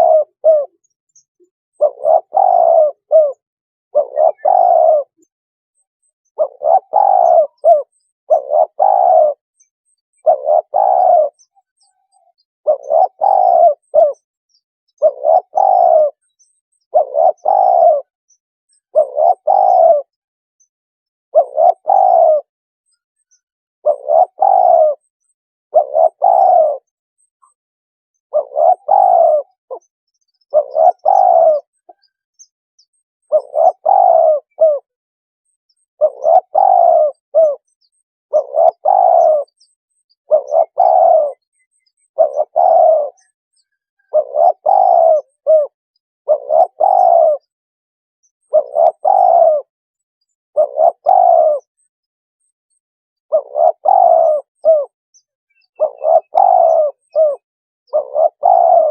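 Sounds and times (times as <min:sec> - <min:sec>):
dove cooing: 0:00.0 - 0:09.5, 0:10.1 - 0:14.3, 0:14.9 - 0:18.2, 0:18.8 - 0:20.2, 0:21.3 - 0:22.5, 0:23.8 - 0:25.1, 0:25.7 - 0:27.3, 0:28.2 - 0:32.2, 0:33.2 - 0:35.0, 0:35.9 - 0:39.6, 0:40.2 - 0:47.5, 0:48.4 - 0:49.7, 0:50.6 - 0:51.8, 0:53.3 - 0:55.0, 0:55.6 - 0:58.9.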